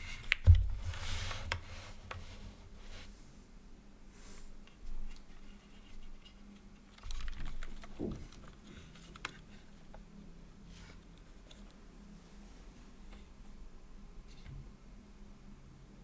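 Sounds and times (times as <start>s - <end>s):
mechanical keyboard clicks: 7.0s - 8.0s.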